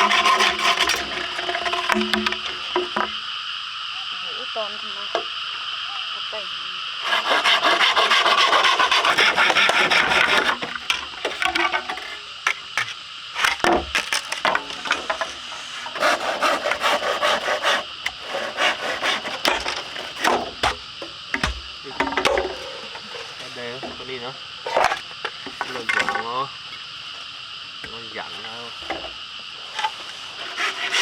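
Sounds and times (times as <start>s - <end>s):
knocks and scrapes on wood: 0.0s - 3.2s, 7.1s - 26.3s, 29.8s - 31.0s
sawing wood: 0.0s - 3.2s, 7.0s - 21.6s, 28.4s - 31.0s.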